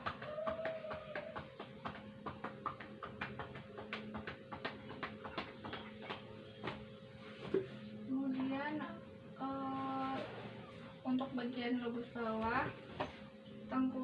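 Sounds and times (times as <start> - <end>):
hand patting on chest: 0.0 - 7.7.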